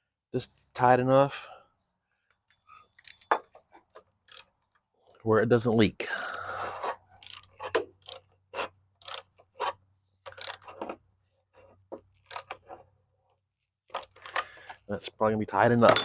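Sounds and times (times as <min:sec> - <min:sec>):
socket ratchet clicking: 0:04.3 - 0:04.5, 0:07.2 - 0:08.2, 0:09.0 - 0:09.3, 0:10.2 - 0:10.7.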